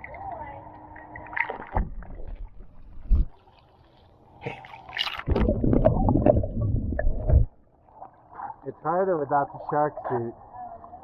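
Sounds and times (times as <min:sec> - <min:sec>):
pool water sloshing and gurgling: 0:00.0 - 0:11.0.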